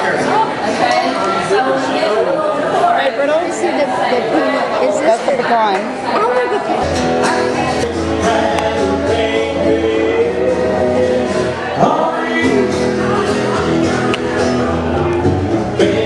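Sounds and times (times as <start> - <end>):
guitar: 4.8 - 16.0
low bass line: 6.8 - 16.0
several voices singing: 6.8 - 16.0.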